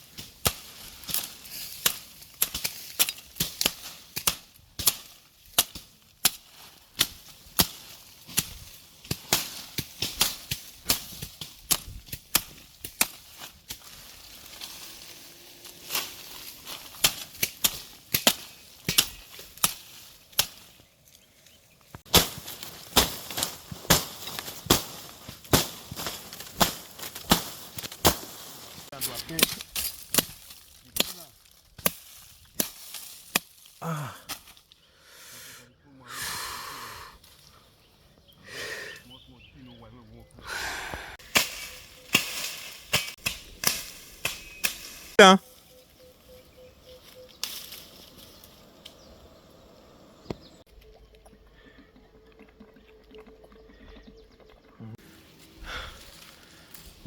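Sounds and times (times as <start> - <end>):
hand tool chopping ground: 0.0 - 21.2, 22.0 - 34.7, 40.9 - 45.3.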